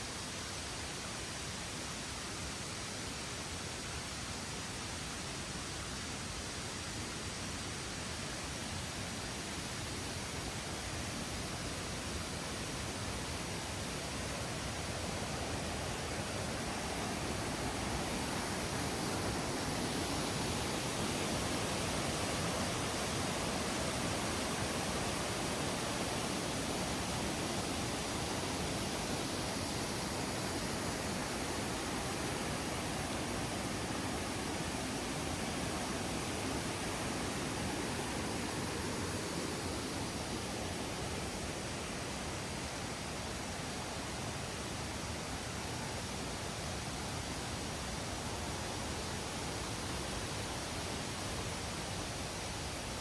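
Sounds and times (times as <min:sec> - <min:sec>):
rushing stream water: 0:00.0 - 0:53.0.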